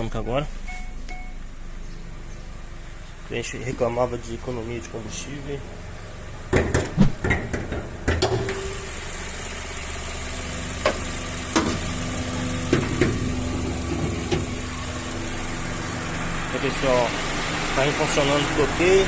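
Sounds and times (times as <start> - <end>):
car engine idling: 1.1 - 19.0
sharp knocks and clicks: 6.5 - 8.5, 10.8 - 11.8, 12.7 - 14.5.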